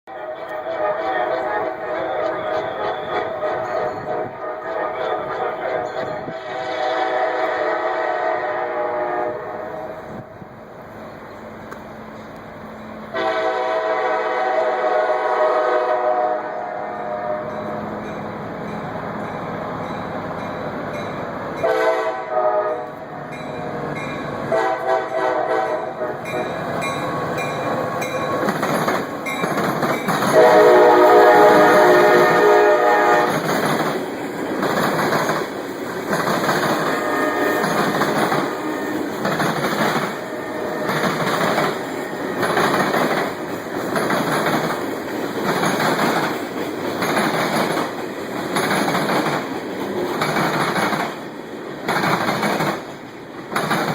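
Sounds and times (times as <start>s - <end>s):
locomotive air horn blasts: 0.1s - 10.0s, 13.1s - 17.7s, 21.6s - 23.2s, 24.4s - 28.4s, 30.3s - 33.4s, 36.8s - 39.1s, 40.2s - 41.0s
train wheels clacking over rail joints: 26.3s - 53.9s.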